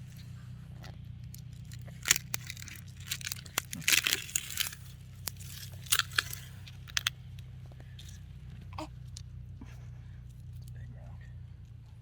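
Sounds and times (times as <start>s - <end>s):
soil being dug and scraped: 0.0s - 7.1s.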